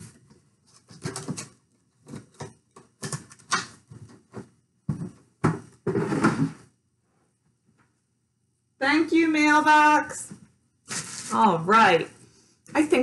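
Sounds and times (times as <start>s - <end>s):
objects knocking: 0.9s - 6.7s.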